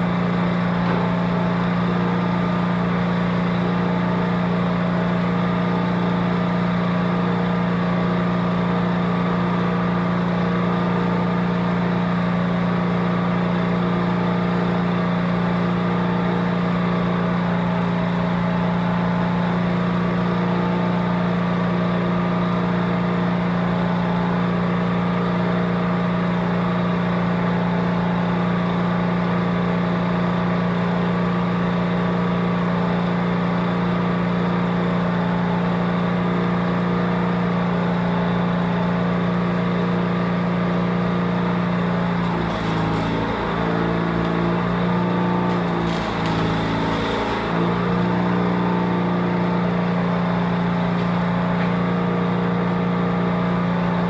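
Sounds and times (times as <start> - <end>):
motor humming: 42.1 - 48.8.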